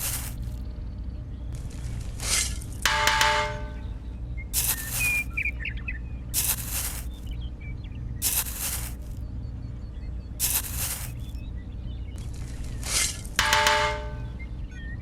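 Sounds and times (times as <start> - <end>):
birds chirping: 0.0 - 15.0
steady low hum: 0.0 - 15.0
short bursts of noise: 10.4 - 11.3.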